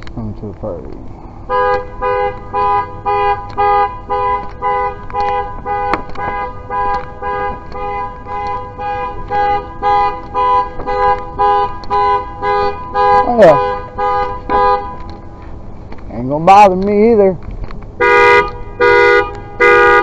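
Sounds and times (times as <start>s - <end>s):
car alarm horn honking: 1.5s - 15.3s, 18.0s - 20.0s.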